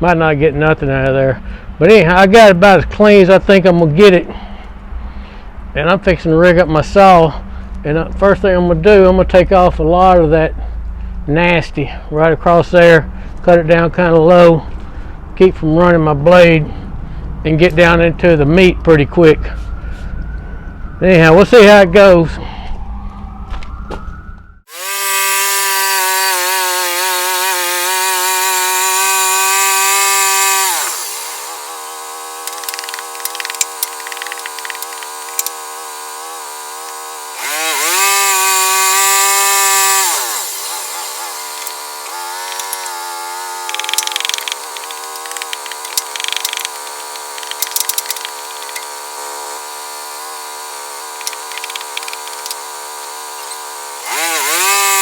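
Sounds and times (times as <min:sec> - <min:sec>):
saw blade crackling through log: 0:24.7 - 0:55.0
sawmill engine running: 0:24.7 - 0:55.0
crackling and ticking: 0:32.5 - 0:35.5, 0:43.6 - 0:49.0, 0:51.2 - 0:52.6.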